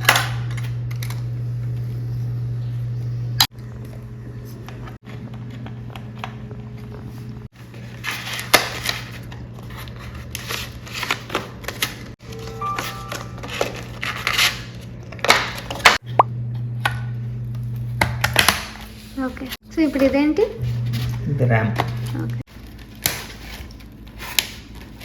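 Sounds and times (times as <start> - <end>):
low hum: 0.2 - 7.5.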